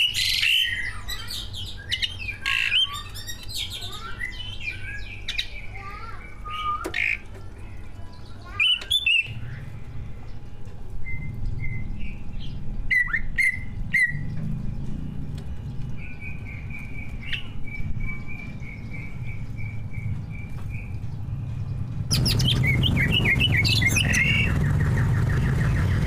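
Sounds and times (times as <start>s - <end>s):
bird singing whistled notes: 6.3s - 7.2s, 11.0s - 14.3s, 22.1s - 26.0s
low background rumble: 9.3s - 26.0s.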